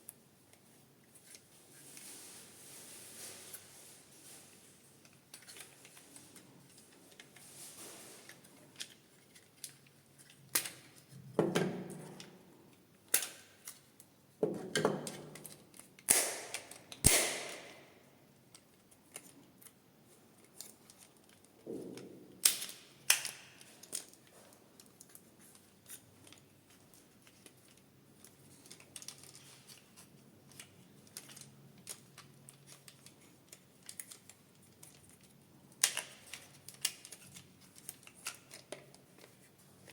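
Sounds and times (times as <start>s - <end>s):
packaging rustling and scraping: 1.2s - 10.4s.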